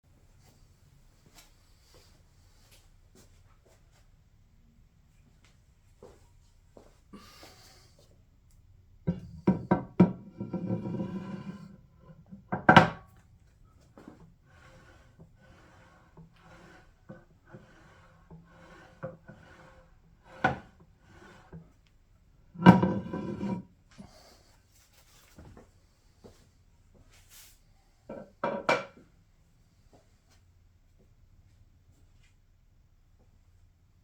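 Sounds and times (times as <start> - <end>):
hand scraper scraping cast iron: 9.1 - 12.4, 13.9 - 21.7, 22.6 - 23.7.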